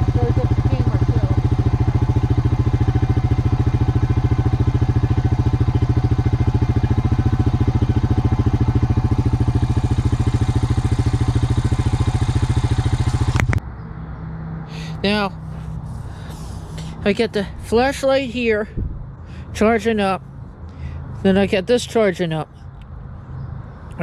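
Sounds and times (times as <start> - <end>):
atv engine idling: 0.0 - 13.6, 14.9 - 18.6.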